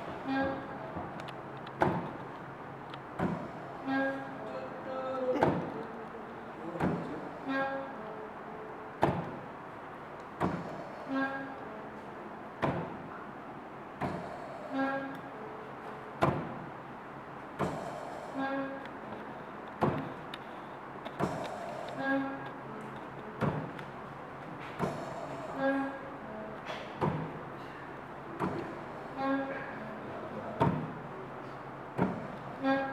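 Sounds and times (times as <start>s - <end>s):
ventilator motor hum: 17.4s - 31.1s.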